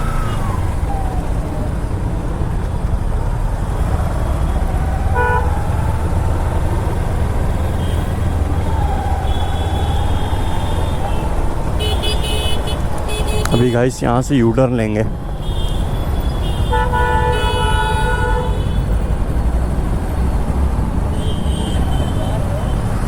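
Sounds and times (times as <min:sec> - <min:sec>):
motorcycle engine and wind rumble: 0:00.0 - 0:23.0
vehicle horn honking: 0:05.2 - 0:05.5, 0:11.8 - 0:13.9, 0:15.4 - 0:18.9.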